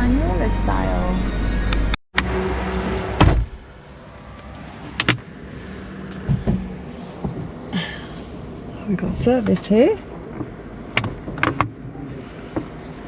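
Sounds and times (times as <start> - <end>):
low rumble: 0.0 - 7.7
loud thump: 3.1 - 3.6
sharp clicks and knocks: 10.3 - 11.8.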